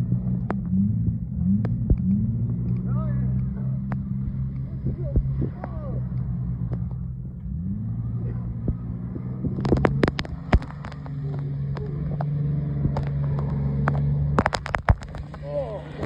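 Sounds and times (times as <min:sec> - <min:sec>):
car engine revving: 0:00.0 - 0:16.0
sharp clicks: 0:08.6 - 0:15.4.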